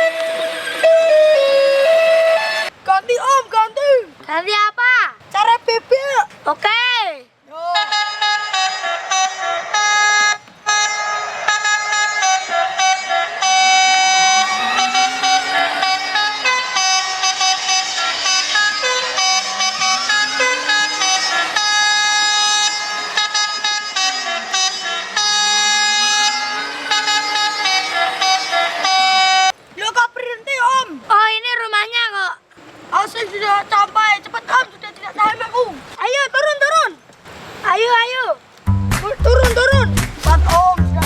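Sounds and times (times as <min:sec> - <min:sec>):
multi-tone bus horn melody: 0:00.0 - 0:02.7, 0:07.7 - 0:29.6.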